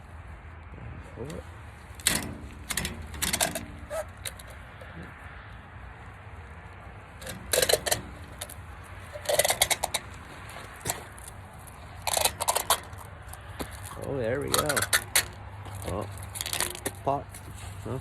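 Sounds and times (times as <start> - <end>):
rubber grip core rattling: 1.9 - 5.2, 7.2 - 17.6.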